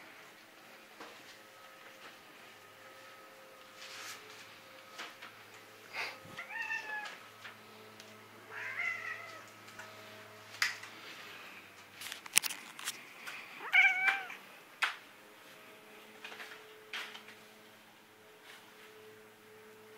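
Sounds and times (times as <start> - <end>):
cat meowing: 6.4 - 7.2, 8.5 - 9.5, 13.6 - 14.4.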